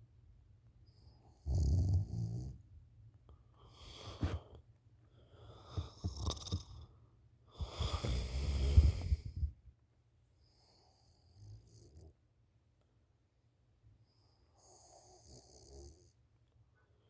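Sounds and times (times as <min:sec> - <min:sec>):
woman snoring into a pillow: 0:01.4 - 0:02.5, 0:05.7 - 0:06.9, 0:07.6 - 0:09.4.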